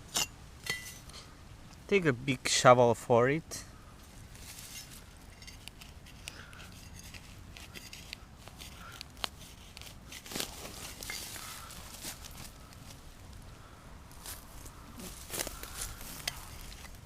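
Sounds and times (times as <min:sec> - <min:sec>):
shovel digging in soil: 0:04.4 - 0:12.4.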